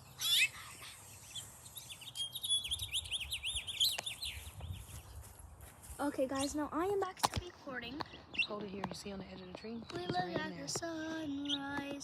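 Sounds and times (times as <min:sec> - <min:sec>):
finch chirping: 0:00.0 - 0:05.1, 0:08.0 - 0:12.0.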